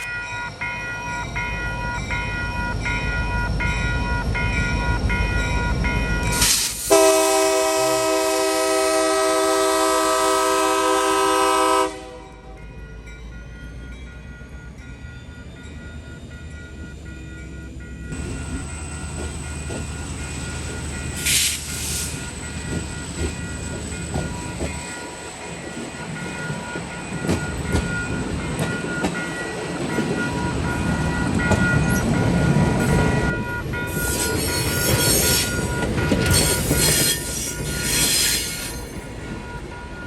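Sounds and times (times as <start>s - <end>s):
train locomotive and wheels rumbling: 0.0s - 40.0s
loud high-pitched horn bursts: 6.9s - 12.3s.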